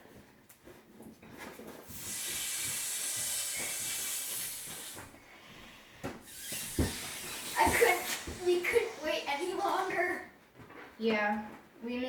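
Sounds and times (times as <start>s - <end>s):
short air puffs: 1.8s - 10.2s
air hissing through valve: 1.9s - 10.2s.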